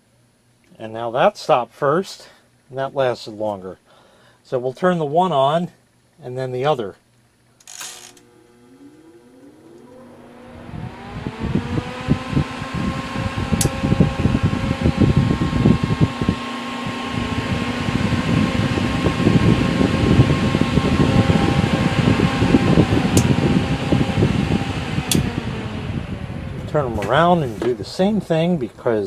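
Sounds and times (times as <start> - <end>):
fan motor whine: 7.5 - 29.0
sharp click: 25.1 - 25.3.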